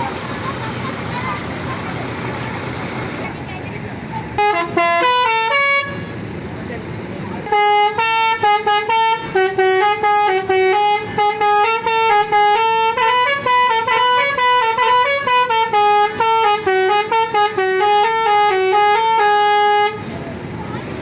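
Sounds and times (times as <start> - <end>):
air horns playing a tune: 4.4 - 6.1, 7.4 - 20.1.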